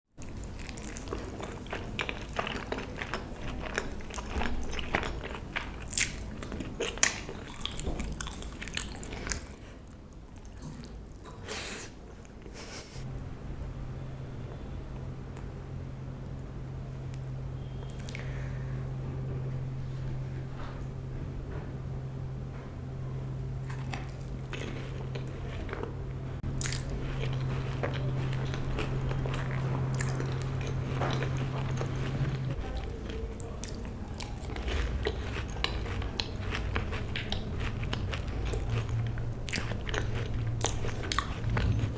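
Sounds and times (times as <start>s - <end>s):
person chewing crunchy food: 0.2s - 11.6s, 17.1s - 18.7s, 23.6s - 41.9s
steady low hum: 0.2s - 41.9s.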